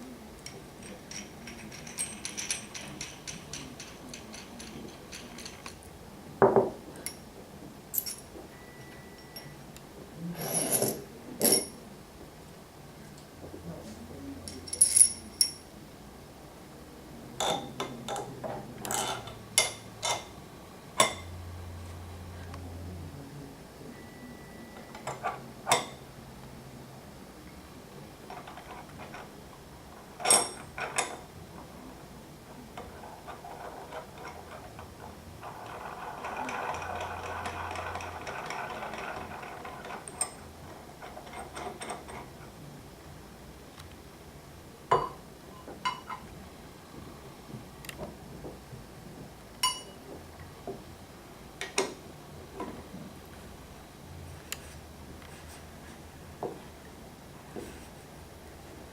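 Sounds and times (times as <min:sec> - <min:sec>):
metal tools clicking and clinking: 0:00.4 - 0:05.9, 0:07.9 - 0:08.3, 0:10.4 - 0:11.8, 0:14.5 - 0:15.6, 0:17.4 - 0:20.3, 0:30.2 - 0:31.3.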